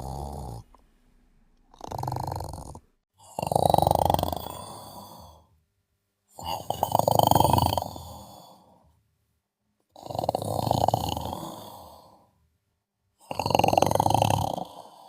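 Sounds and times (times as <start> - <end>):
person snoring: 0.0 - 0.8, 1.7 - 5.5, 6.4 - 8.8, 10.0 - 12.3, 13.2 - 15.0.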